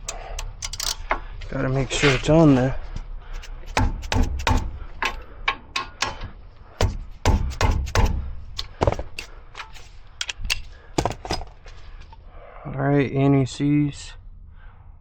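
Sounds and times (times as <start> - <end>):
ratchet clicking: 0.0 - 1.1.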